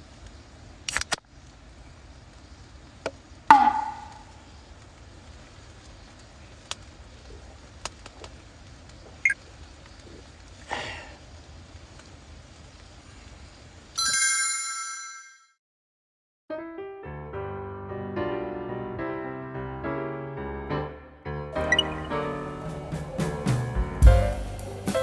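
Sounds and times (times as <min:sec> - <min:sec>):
background hiss: 0:00.0 - 0:14.0, 0:21.6 - 0:25.0
bell-like chime: 0:14.0 - 0:15.6.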